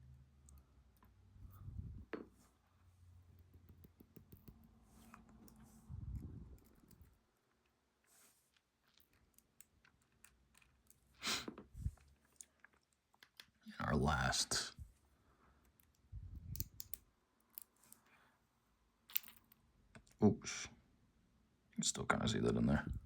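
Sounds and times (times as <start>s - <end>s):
tweezers clicking on lock pins: 16.6s - 17.7s.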